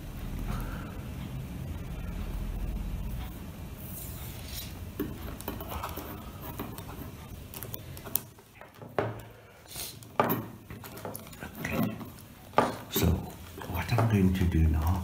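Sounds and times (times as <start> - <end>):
tape rustling and scraping: 3.8 - 15.0.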